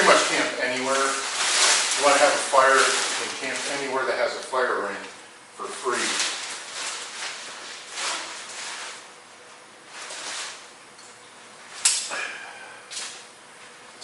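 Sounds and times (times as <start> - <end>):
tent fabric rustling: 0.0 - 4.0, 5.7 - 9.2, 9.8 - 10.7
sharp click: 11.8 - 12.1.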